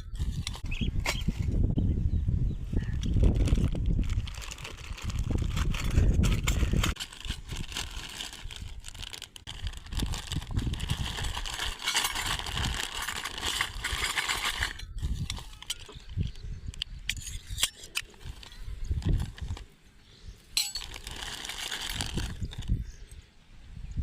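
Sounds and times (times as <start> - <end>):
packaging rustling: 3.0 - 16.3, 17.7 - 19.7, 20.6 - 22.8.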